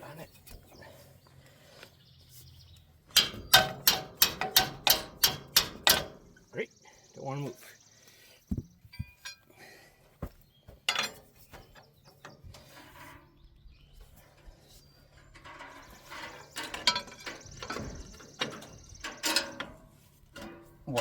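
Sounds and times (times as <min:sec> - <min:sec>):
metal rattling: 0:03.1 - 0:06.4, 0:10.8 - 0:13.4, 0:14.0 - 0:21.0
wrench clinking and scraping: 0:03.1 - 0:06.4, 0:08.8 - 0:09.5, 0:10.8 - 0:13.4, 0:14.1 - 0:21.0.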